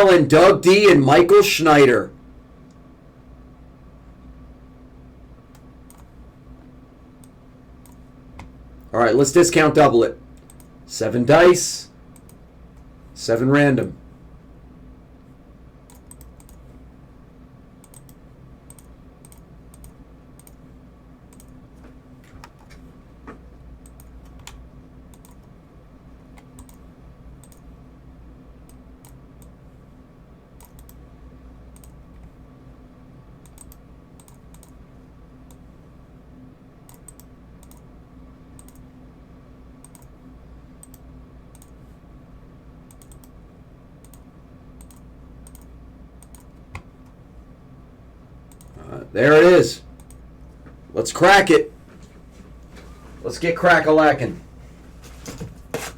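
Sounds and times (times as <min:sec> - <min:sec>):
steady low hum: 0:00.0 - 0:55.9
computer keyboard and mouse clicks: 0:05.5 - 0:06.1, 0:10.4 - 0:10.7, 0:15.9 - 0:16.6, 0:17.8 - 0:20.6, 0:21.3 - 0:25.5, 0:26.4 - 0:26.8, 0:27.4 - 0:27.6, 0:30.6 - 0:31.0, 0:31.7 - 0:32.3, 0:33.4 - 0:34.8, 0:36.9 - 0:37.9, 0:38.6 - 0:38.8, 0:39.8 - 0:40.1, 0:40.8 - 0:41.8, 0:42.9 - 0:43.4, 0:44.0 - 0:47.2.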